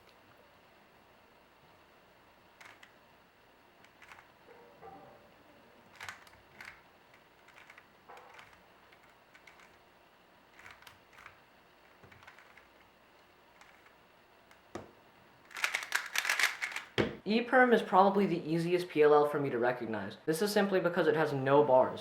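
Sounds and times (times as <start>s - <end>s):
puzzle cube clicking: 2.6s - 3.0s, 3.8s - 4.3s, 5.9s - 9.8s, 10.5s - 12.8s, 13.5s - 14.8s, 15.5s - 17.0s.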